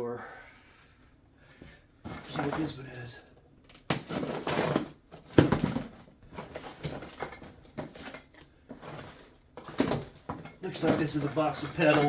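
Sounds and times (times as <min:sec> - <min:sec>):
cardboard rustling and scraping: 0:02.1 - 0:03.0, 0:04.0 - 0:12.0.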